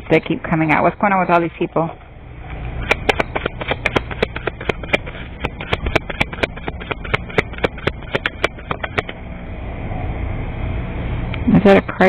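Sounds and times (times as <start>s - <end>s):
cards being shuffled: 2.7s - 9.2s.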